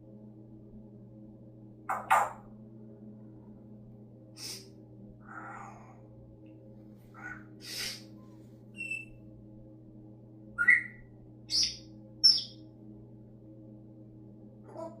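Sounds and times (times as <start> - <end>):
parrot hissing: 4.4 - 4.7, 7.1 - 8.2
parrot squeaky chirps: 8.8 - 9.1, 10.6 - 12.5.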